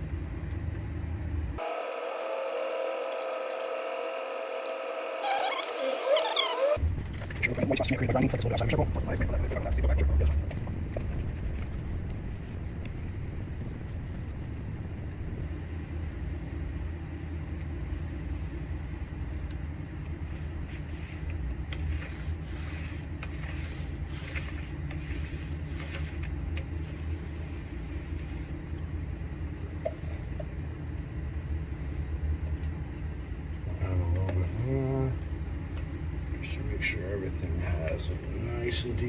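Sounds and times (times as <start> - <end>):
steady low rumble: 6.8 - 39.0
paint brush strokes: 8.9 - 28.8.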